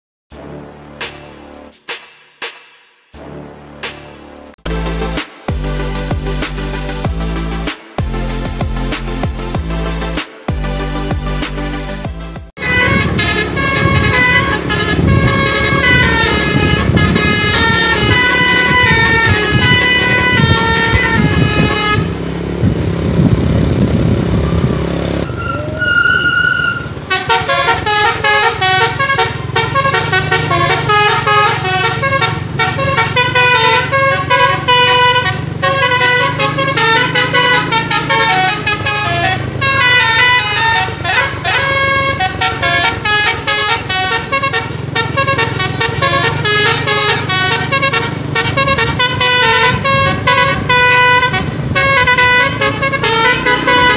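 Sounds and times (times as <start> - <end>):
musical air horn melodies: 4.7 - 22.4, 24.4 - 53.9
noisy rush: 12.6 - 39.8
bus engine hum: 12.6 - 53.9.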